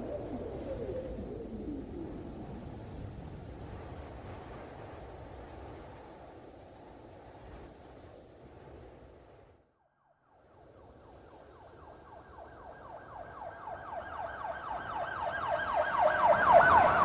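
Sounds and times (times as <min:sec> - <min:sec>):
police siren yelping: 0:12.7 - 0:17.0.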